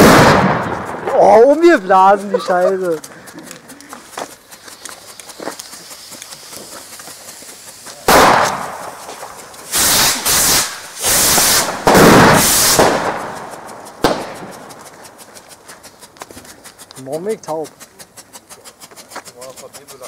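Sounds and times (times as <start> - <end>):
firecracker explosions: 0.0 - 2.9, 4.4 - 15.2.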